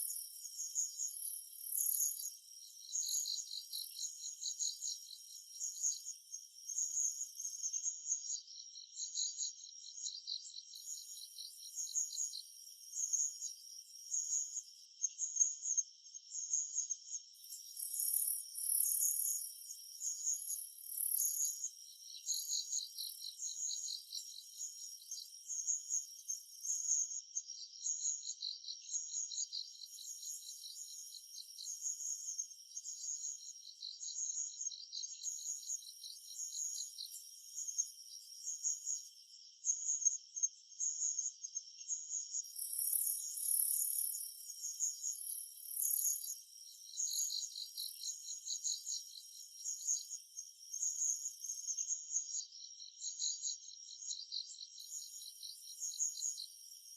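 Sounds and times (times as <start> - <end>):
high hissy insect buzz: 0.0 - 7.8, 17.4 - 27.0, 28.8 - 39.5, 41.7 - 56.9
insects pulsing chirps: 0.0 - 56.9.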